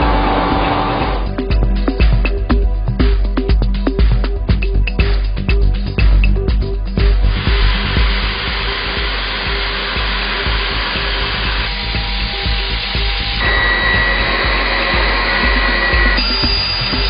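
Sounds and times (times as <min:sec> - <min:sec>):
milling machine cutting: 0:00.0 - 0:01.3, 0:07.3 - 0:17.0
background music: 0:00.0 - 0:17.0
thin steady whine: 0:07.2 - 0:17.0.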